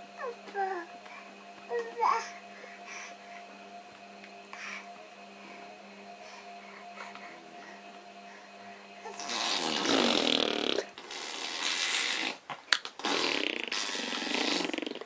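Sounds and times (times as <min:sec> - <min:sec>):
baby blowing raspberries: 0:09.1 - 0:15.0.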